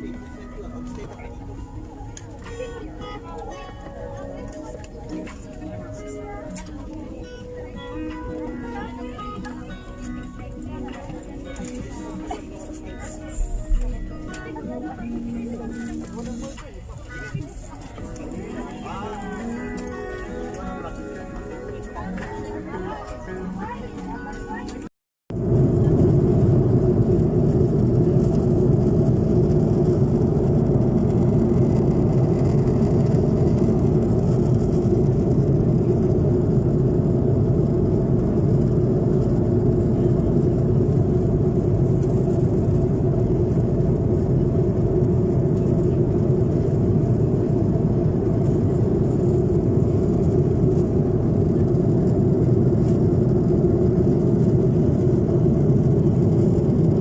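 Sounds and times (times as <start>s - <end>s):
airliner cabin engine drone: 0.0s - 57.0s.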